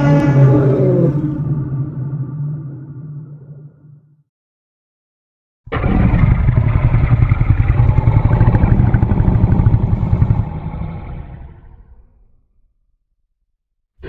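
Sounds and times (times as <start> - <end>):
deep pulsing monster growl: 0.0 - 4.0, 5.7 - 12.5.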